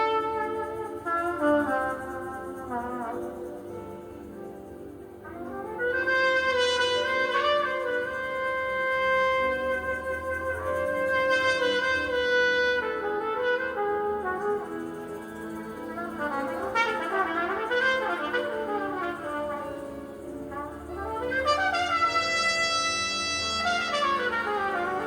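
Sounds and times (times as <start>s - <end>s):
trumpet playing slow melody: 0.0s - 4.4s, 5.0s - 25.0s
quiet musical backing: 0.0s - 25.0s.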